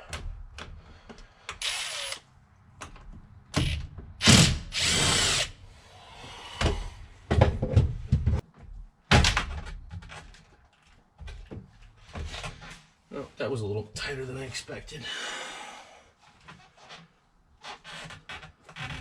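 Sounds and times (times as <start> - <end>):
power driver whirring: 1.6 - 2.2, 3.6 - 5.6.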